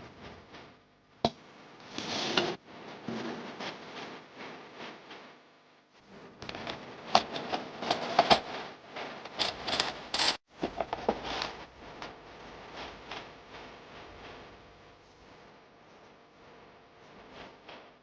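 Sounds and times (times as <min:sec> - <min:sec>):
handling clicks and scrapes: 0:06.4 - 0:11.6.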